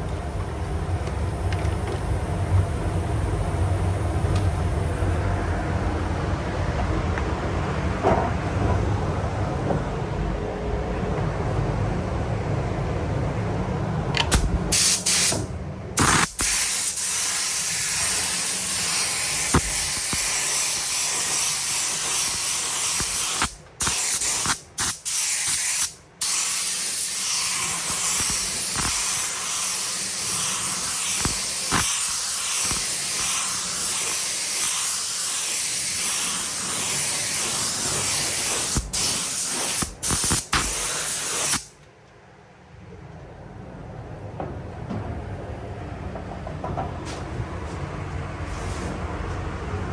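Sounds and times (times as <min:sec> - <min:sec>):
paint spray gun hissing: 0:14.4 - 0:15.4, 0:16.0 - 0:41.7.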